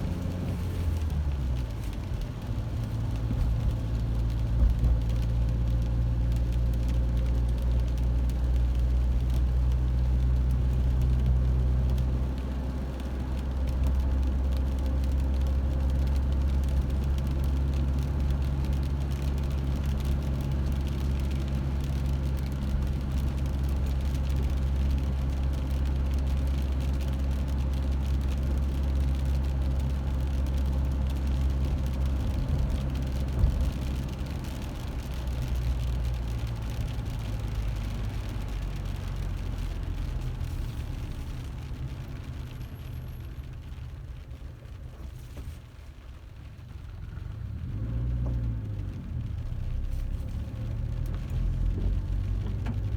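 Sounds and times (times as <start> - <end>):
vehicle engine running: 0.0 - 52.9.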